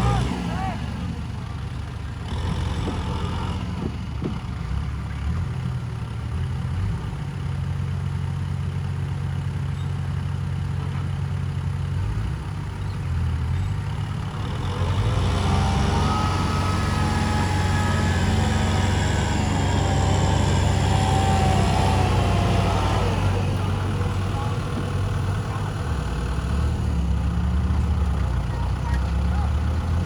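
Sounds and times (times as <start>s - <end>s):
diesel engine rumbling and revving: 0.0s - 30.0s.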